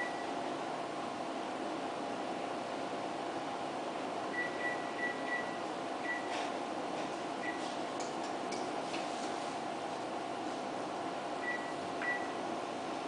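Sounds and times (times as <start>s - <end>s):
fan hum: 0.0s - 13.0s.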